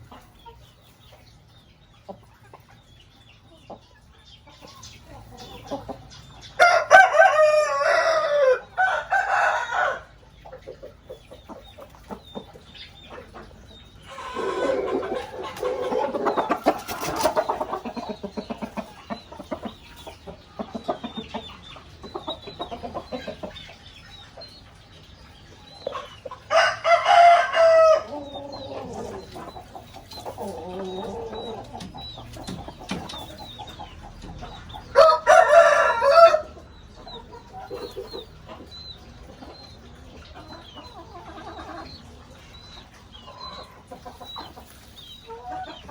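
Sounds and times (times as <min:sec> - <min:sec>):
chickens clucking: 0:00.0 - 0:45.9
rooster crowing: 0:06.6 - 0:10.1, 0:26.5 - 0:28.1, 0:35.0 - 0:36.6.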